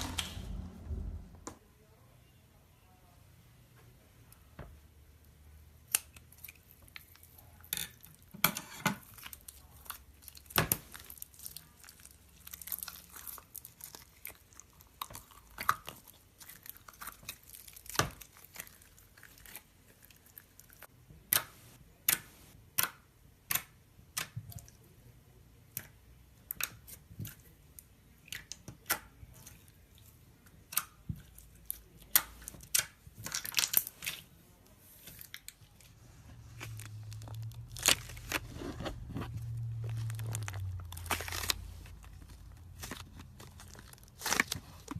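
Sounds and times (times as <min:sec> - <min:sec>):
tearing rustles: 0:36.3 - 0:44.9.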